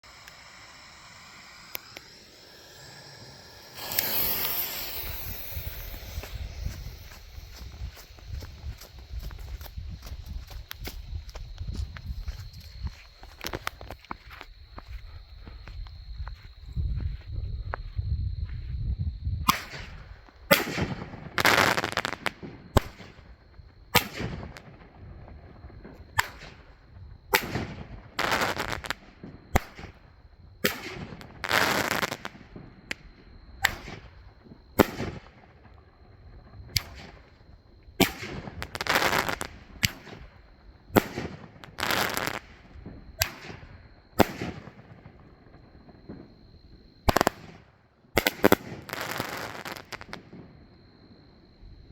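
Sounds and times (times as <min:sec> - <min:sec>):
firework crackling: 0:00.0 - 0:14.0, 0:20.5 - 0:23.2, 0:26.1 - 0:30.0, 0:30.6 - 0:32.5, 0:36.7 - 0:45.1, 0:47.0 - 0:47.6, 0:48.2 - 0:50.3
firework shots banging: 0:00.1 - 0:09.5.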